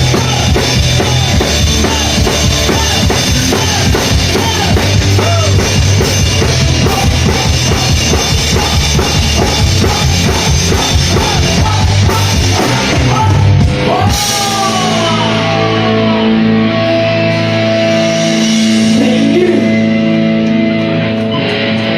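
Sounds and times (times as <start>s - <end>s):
fast drum beat: 0.0s - 15.8s
rock band playing: 0.0s - 21.9s.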